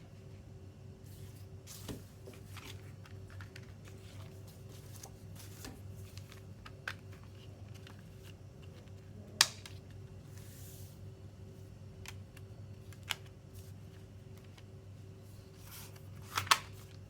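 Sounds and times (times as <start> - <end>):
steady low hum: 0.0 - 17.0
paper and plastic rustling: 1.1 - 9.1.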